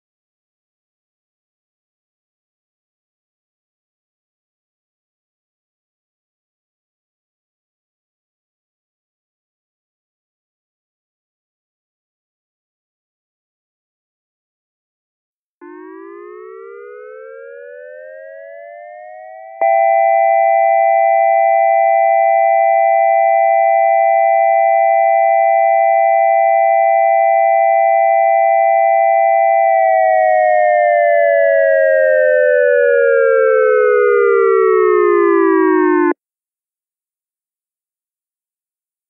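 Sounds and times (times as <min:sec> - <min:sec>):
dual-tone electronic siren: 0:15.6 - 0:36.2.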